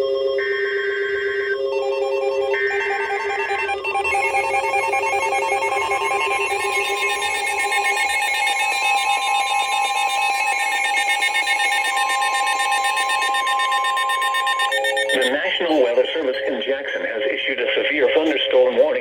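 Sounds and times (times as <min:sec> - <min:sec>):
digital data screech: 0:02.5 - 0:19.0
harsh electronic alert tone: 0:11.2 - 0:19.0.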